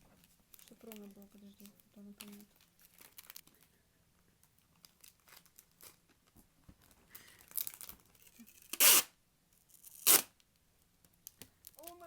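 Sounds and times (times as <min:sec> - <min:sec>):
wrapping materials rustling: 0:00.2 - 0:03.8, 0:04.4 - 0:06.1, 0:06.8 - 0:09.0
loud ripping: 0:08.6 - 0:09.1, 0:09.9 - 0:10.3.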